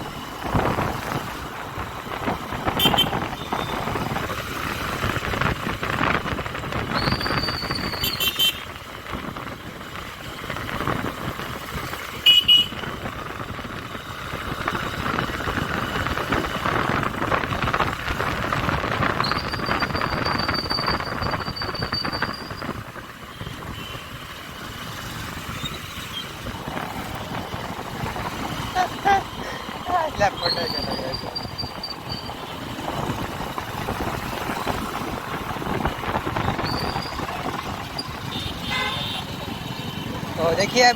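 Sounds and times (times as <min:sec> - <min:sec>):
motorcycle engine: 0:00.0 - 0:40.9
wind and road noise: 0:00.0 - 0:40.9
horn toots: 0:38.3 - 0:39.4.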